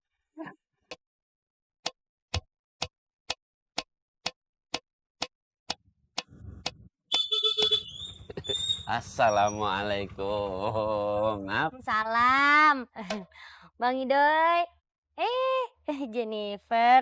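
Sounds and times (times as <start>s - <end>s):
shrill alarm ringing: 7.1s - 9.0s.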